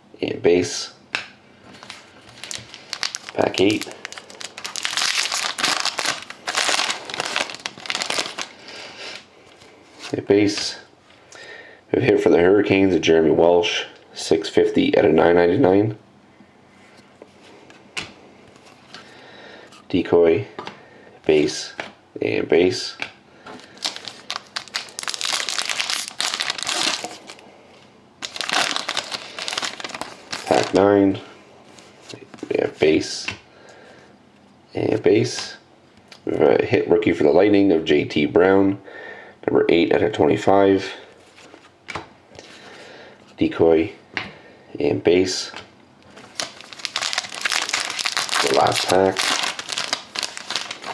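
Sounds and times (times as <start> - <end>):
foil pack tearing and crinkling: 1.8 - 8.6, 23.6 - 27.4, 28.2 - 30.8, 46.2 - 50.9.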